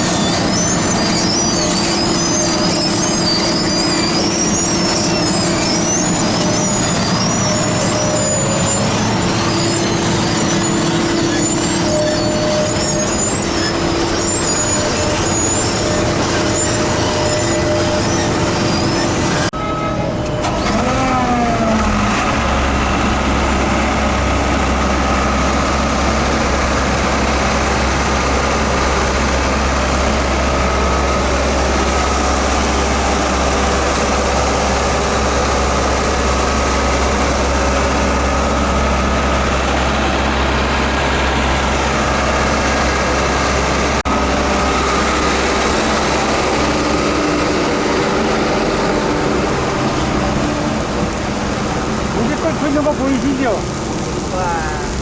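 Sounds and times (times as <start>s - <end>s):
diesel paving machinery drone: 0.0s - 55.0s.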